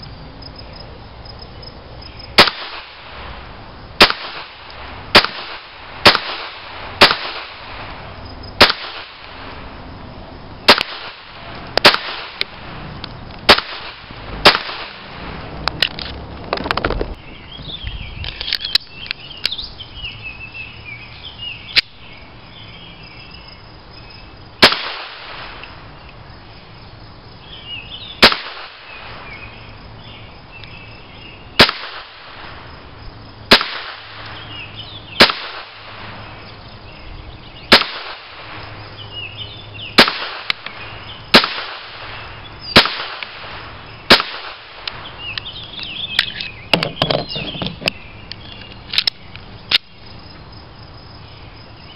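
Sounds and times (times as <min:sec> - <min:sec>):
birds chirping: 0:00.0 - 0:02.4, 0:16.5 - 0:24.6, 0:25.6 - 0:31.6, 0:34.2 - 0:35.3, 0:36.0 - 0:37.8, 0:38.6 - 0:40.0, 0:40.6 - 0:41.4, 0:42.0 - 0:42.9, 0:44.8 - 0:51.9
pistol shots with echo: 0:02.4 - 0:03.0, 0:04.0 - 0:07.8, 0:08.6 - 0:09.2, 0:10.7 - 0:12.4, 0:13.5 - 0:15.1, 0:24.6 - 0:25.5, 0:28.2 - 0:29.0, 0:31.6 - 0:32.4, 0:33.5 - 0:34.2, 0:35.2 - 0:36.1, 0:37.7 - 0:38.5, 0:40.0 - 0:40.7, 0:41.3 - 0:42.1, 0:42.7 - 0:43.5, 0:44.1 - 0:44.8.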